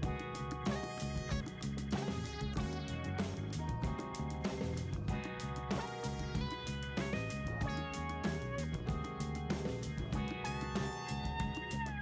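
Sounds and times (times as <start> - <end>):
guitar music with bass and beat: 0.0 - 12.0.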